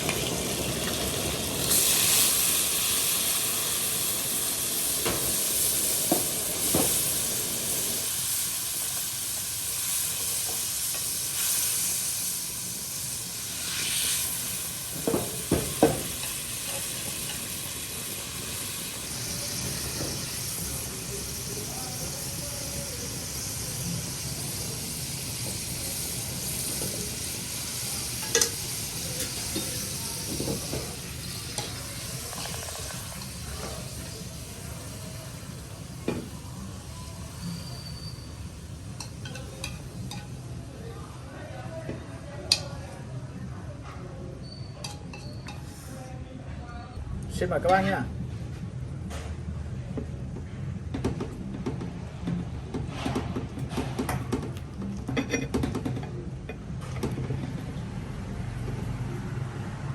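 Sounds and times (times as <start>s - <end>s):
food sizzling in hot oil: 0.0s - 40.6s.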